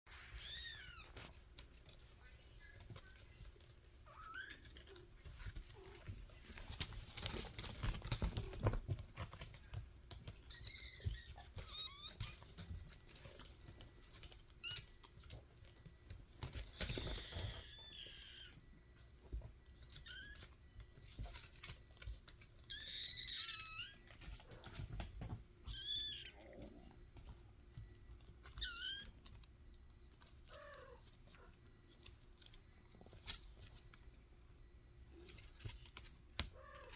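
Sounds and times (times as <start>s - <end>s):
kittens mewing: 30.4s - 31.6s.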